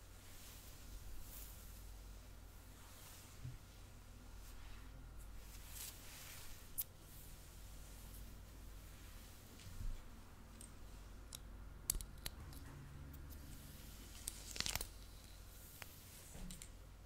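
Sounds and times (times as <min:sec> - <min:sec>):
steady low hum: 0:00.0 - 0:17.0
light scratching clicks and crackles: 0:09.5 - 0:16.8.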